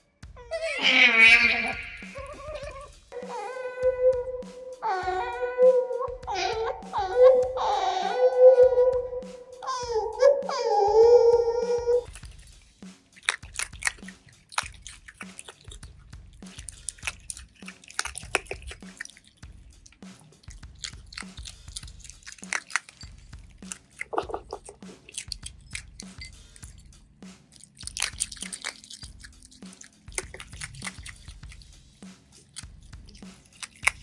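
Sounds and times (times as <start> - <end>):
otter call: 0.7 - 12.2
otter chewing and crunching food: 0.8 - 3.3, 11.4 - 12.6, 13.2 - 26.8, 27.5 - 34.0.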